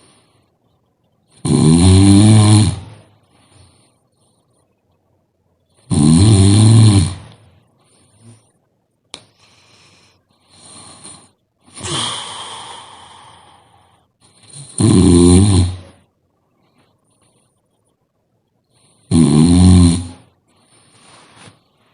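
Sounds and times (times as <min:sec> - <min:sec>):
person snoring: 0:01.4 - 0:03.0, 0:05.9 - 0:07.4, 0:10.5 - 0:16.0, 0:19.1 - 0:20.3.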